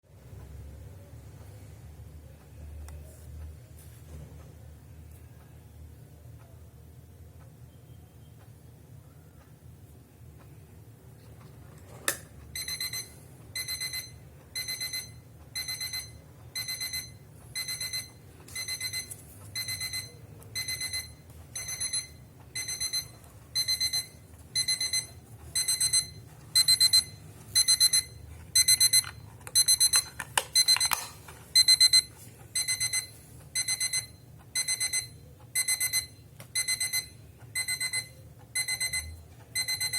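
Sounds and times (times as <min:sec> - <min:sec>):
alarm clock beeping: 0:12.5 - 0:39.9.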